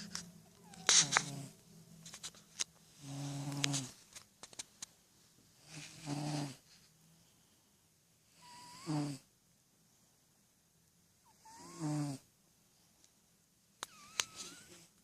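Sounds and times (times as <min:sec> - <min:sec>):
cat snoring: 0:03.0 - 0:03.9, 0:05.6 - 0:06.6, 0:08.3 - 0:09.3, 0:11.2 - 0:12.3, 0:13.9 - 0:14.8.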